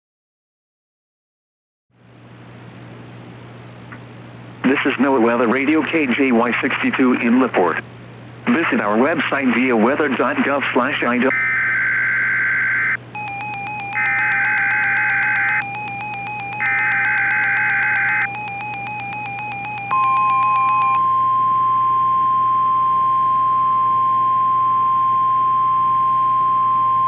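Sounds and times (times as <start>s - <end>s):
harsh digital data bursts: 11.3s - 21.0s
steady warning alarm tone: 11.3s - 27.0s.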